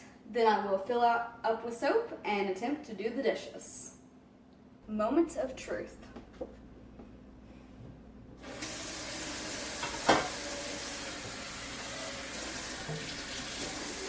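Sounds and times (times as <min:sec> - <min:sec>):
tap water running into sink: 0:08.4 - 0:14.0.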